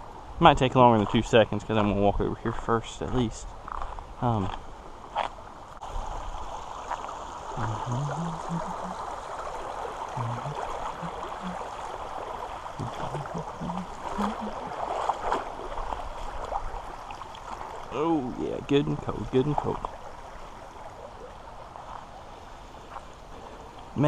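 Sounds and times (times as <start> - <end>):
creek water gurgling over rocks: 5.1 - 24.0.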